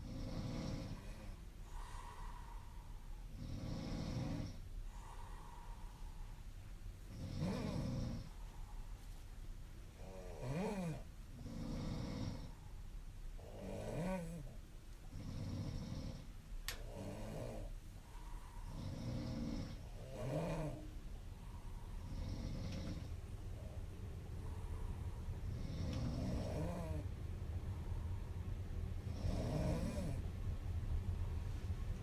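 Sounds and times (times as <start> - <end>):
woman snoring: 0.0 - 6.4, 7.1 - 8.6, 9.9 - 12.7, 13.4 - 23.8, 24.4 - 27.1, 29.1 - 30.2.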